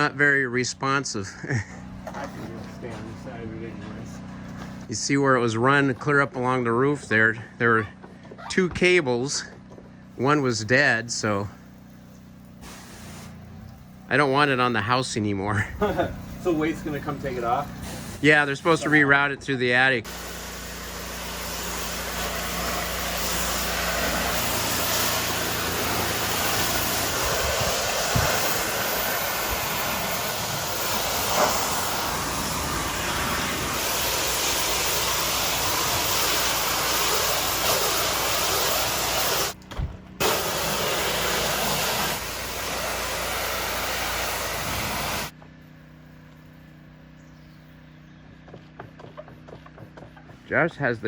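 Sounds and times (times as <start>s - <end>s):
pressure washer spray hissing: 11.3s - 14.7s, 15.7s - 19.1s, 20.0s - 39.6s, 40.2s - 45.4s
low motor hum: 13.3s - 50.7s.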